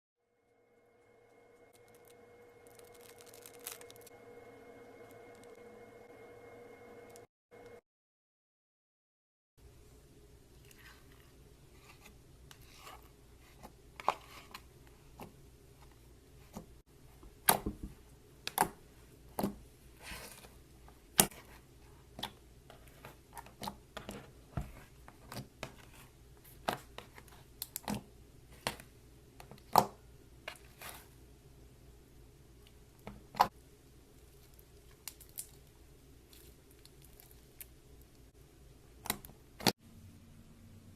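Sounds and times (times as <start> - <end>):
low steady hum: 0.3 - 7.8, 9.6 - 40.9.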